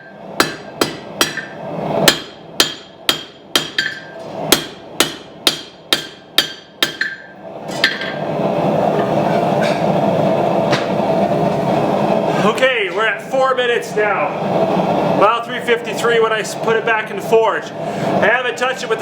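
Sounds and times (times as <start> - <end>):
hammer striking steel on anvil: 0.0 - 8.2
steady mechanical hum: 0.0 - 19.0.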